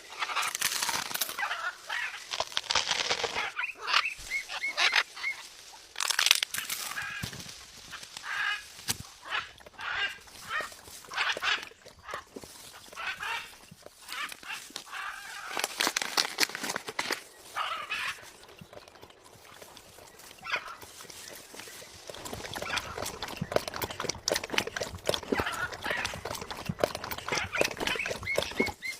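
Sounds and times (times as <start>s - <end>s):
birds harsh calls: 19.8s - 28.9s.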